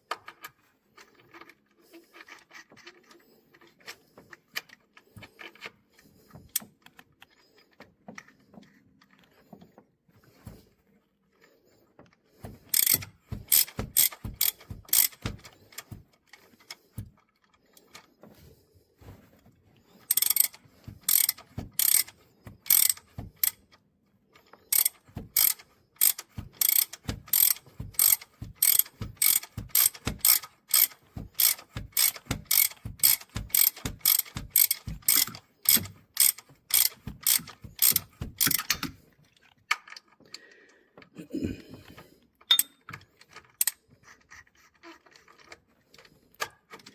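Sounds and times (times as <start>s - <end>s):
ratchet wrench clicking: 12.7s - 16.0s, 20.1s - 23.6s, 24.7s - 39.0s, 42.4s - 42.8s.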